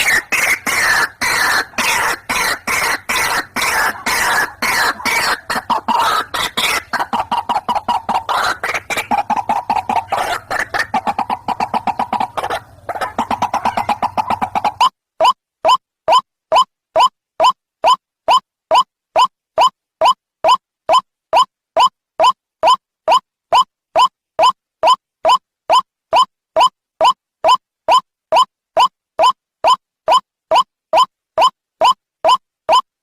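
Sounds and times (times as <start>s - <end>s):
waterhen harsh calls: 0.0s - 14.9s.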